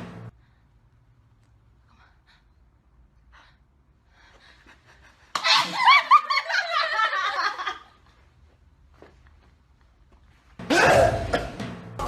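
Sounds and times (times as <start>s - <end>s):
people laughing: 4.7s - 8.0s.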